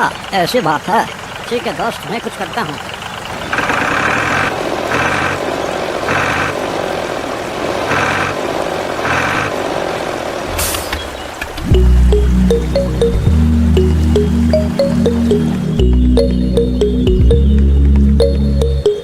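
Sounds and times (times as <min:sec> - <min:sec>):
truck engine idling: 0:00.0 - 0:04.5, 0:11.7 - 0:19.0
reversing alarm beeping: 0:11.7 - 0:19.0.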